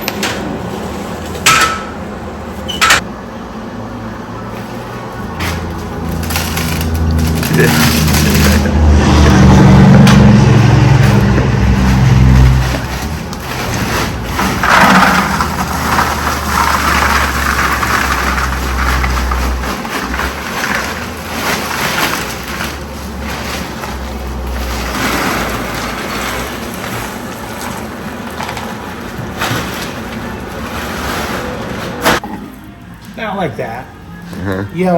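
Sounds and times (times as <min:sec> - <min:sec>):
coal forge fire rushing: 0:04.9 - 0:32.6.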